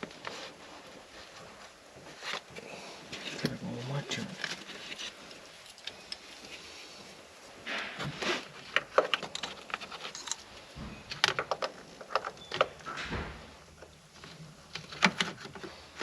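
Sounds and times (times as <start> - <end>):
clatter of small engine parts: 8.6 - 10.5.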